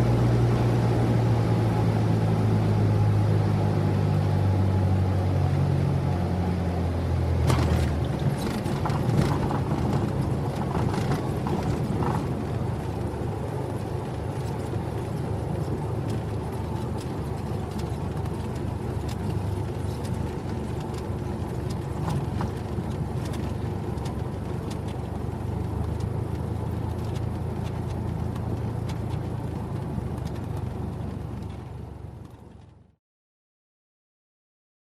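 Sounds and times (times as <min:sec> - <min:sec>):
propeller engine drone: 0:00.0 - 0:32.9
rolling rumble: 0:07.4 - 0:32.8
wheels knocking and rattling: 0:07.4 - 0:32.8.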